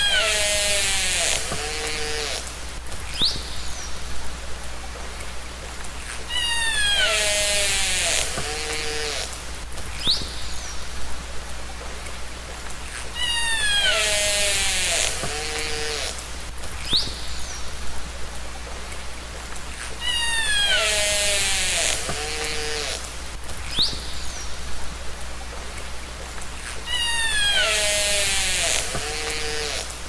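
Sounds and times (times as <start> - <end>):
steady hiss: 0.0 - 30.0
killer whale calls underwater: 26.9 - 28.1.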